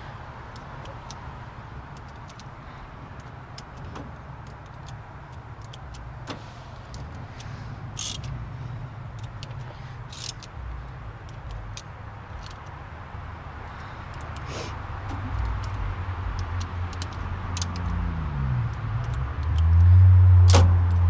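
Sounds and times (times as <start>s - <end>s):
socket ratchet clicking: 3.2s - 6.1s, 6.9s - 8.4s, 9.1s - 12.8s, 15.3s - 18.0s, 18.7s - 21.0s
ratchet rasps: 4.4s - 12.7s.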